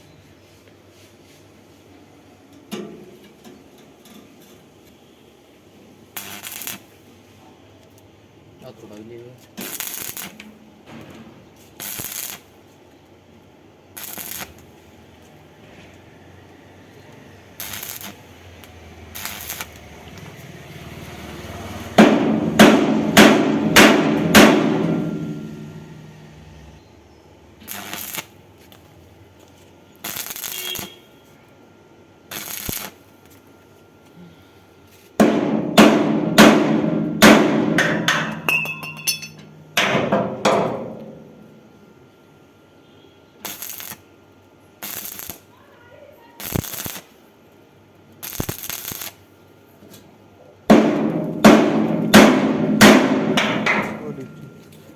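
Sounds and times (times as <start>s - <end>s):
hammer ringing on steel: 22.0s - 25.8s, 35.2s - 41.3s, 50.7s - 54.7s.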